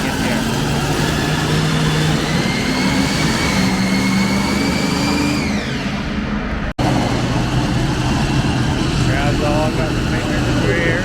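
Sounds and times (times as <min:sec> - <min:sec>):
high engine whine: 0:00.0 - 0:11.0
tractor engine running at full power: 0:00.0 - 0:11.0.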